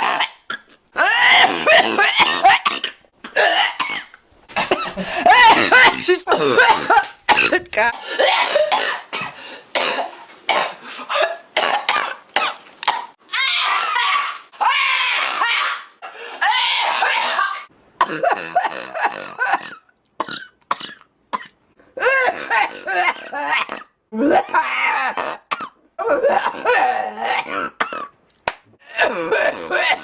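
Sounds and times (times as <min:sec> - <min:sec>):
throaty burp-like sounds: 0:00.0 - 0:07.6, 0:08.2 - 0:12.1, 0:18.0 - 0:21.6, 0:22.3 - 0:28.2
woman coughing: 0:01.5 - 0:11.8.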